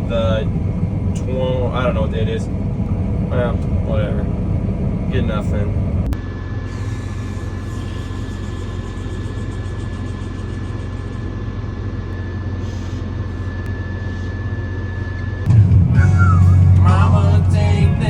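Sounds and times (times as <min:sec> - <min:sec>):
engine and road rumble: 0:00.0 - 0:18.0.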